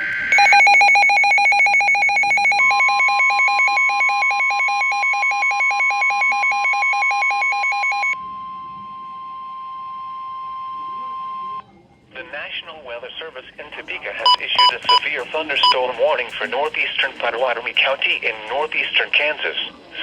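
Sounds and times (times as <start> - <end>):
rapid two-pitch beeping alarm: 0.3 - 8.2, 14.3 - 15.0
steady warning tone: 14.3 - 15.8.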